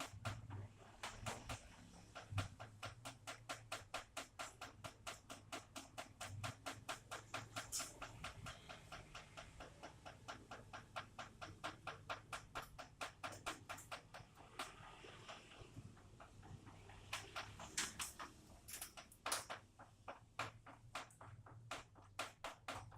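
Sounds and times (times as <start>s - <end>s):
raindrops dripping: 0.0s - 22.9s.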